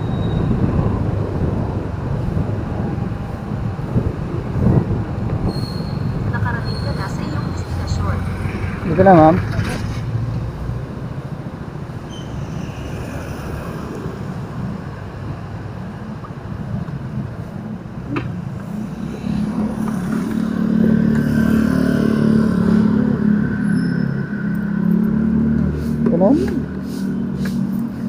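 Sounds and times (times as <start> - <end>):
street traffic: 0.0 - 28.0.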